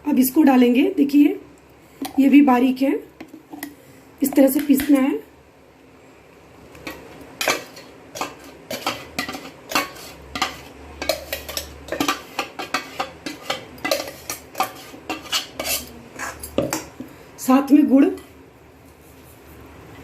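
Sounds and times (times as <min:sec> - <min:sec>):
metal spoon scraping a pan: 0:06.8 - 0:16.9.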